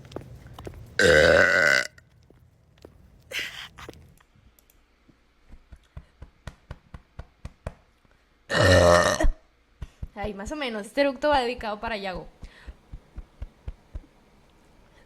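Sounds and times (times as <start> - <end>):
woman burping: 1.0 - 1.9, 8.5 - 9.4.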